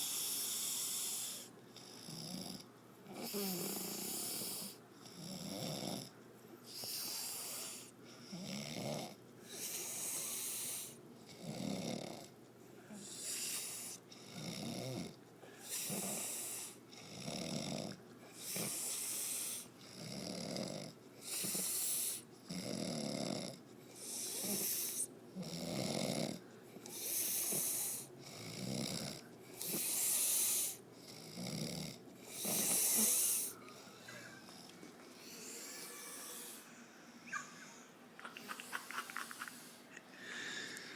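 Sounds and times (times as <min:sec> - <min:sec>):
person snoring: 0:00.0 - 0:06.1, 0:12.9 - 0:34.5, 0:35.2 - 0:37.4.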